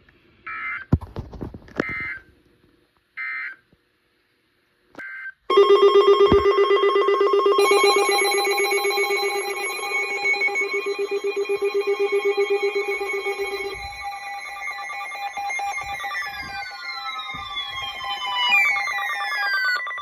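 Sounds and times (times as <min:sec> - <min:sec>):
higher steady tones: 0:05.5 - 0:19.5
rapidly trilling alert tone: 0:05.5 - 0:20.0.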